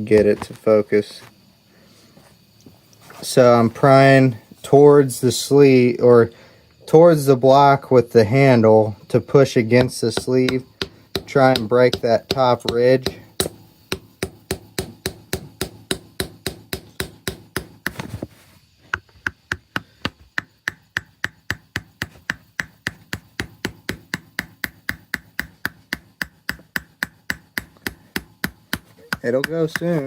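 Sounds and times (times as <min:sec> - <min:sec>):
hammer tapping on screwdriver: 0:09.8 - 0:18.0, 0:18.9 - 0:30.0.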